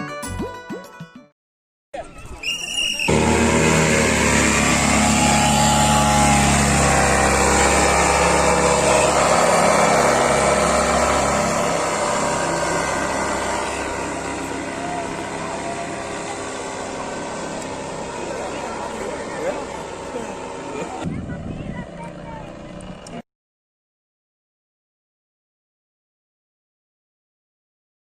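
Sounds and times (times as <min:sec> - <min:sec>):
rushing noise: 0:03.0 - 0:21.0
small engine running hard: 0:03.0 - 0:23.2.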